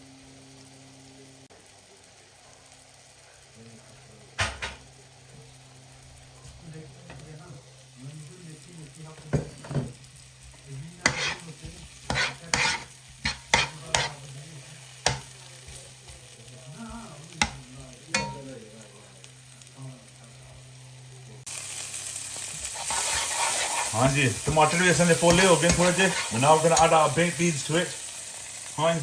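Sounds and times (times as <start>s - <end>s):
vegetables frying in a pan: 0.0s - 29.0s
utensil knocking and scraping pan: 11.0s - 14.2s, 15.1s - 16.2s, 17.4s - 18.5s, 22.7s - 27.0s
loud steady hiss: 21.2s - 29.0s.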